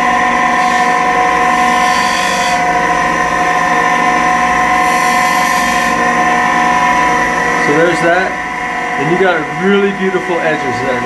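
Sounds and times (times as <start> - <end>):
harsh hissy sanding noise: 0.0 - 8.3
electric sander motor whine: 0.0 - 11.0.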